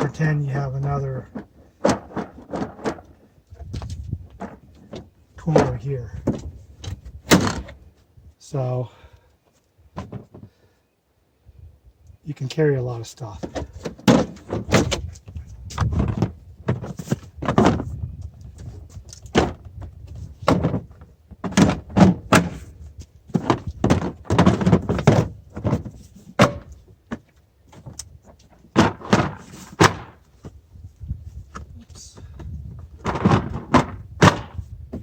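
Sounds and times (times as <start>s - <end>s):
plastic cases clunking: 0.0s - 3.7s, 4.3s - 7.8s, 10.0s - 10.5s, 13.4s - 15.1s, 15.8s - 17.9s, 18.6s - 22.7s, 23.3s - 30.6s, 31.5s - 35.0s.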